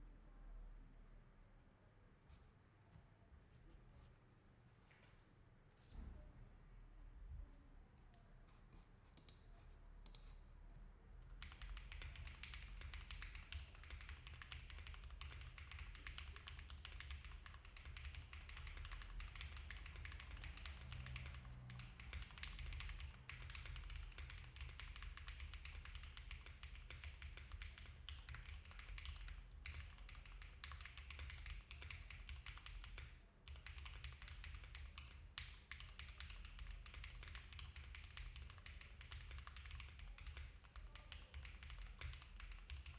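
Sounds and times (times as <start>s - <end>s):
mechanical keyboard typing: 11.2s - 42.9s.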